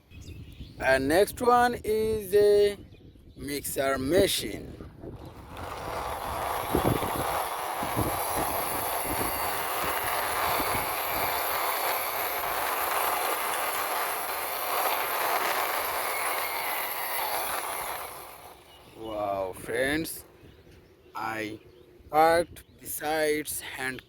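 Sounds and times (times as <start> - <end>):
toy truck wheels rattling: 5.1 - 18.9.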